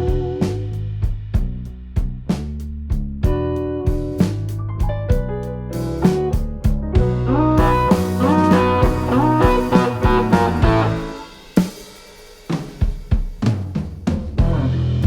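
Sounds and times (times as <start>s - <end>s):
drum hits: 6.2s - 15.0s
melody over drum beat: 6.5s - 12.0s.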